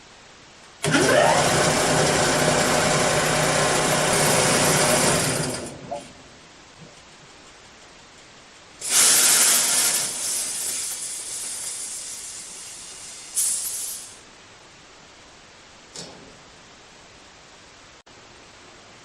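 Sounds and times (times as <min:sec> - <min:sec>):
compressed air hissing: 0:08.8 - 0:14.2.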